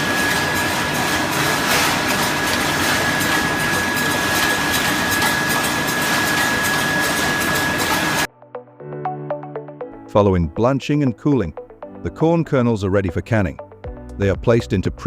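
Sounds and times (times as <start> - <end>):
food-processing machinery running: 0.0 - 8.3
high mechanical whine: 0.0 - 8.3.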